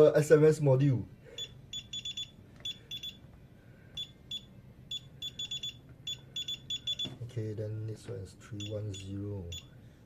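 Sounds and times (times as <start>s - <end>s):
keypad beeps: 1.4s - 3.2s, 4.0s - 7.2s.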